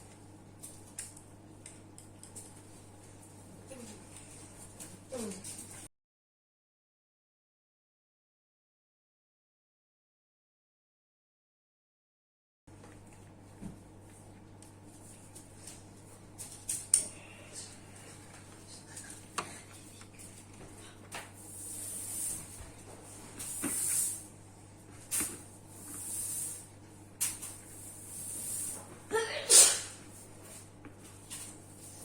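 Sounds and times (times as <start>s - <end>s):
steady low hum: 12.7s - 32.0s
soft hissing: 25.8s - 26.7s.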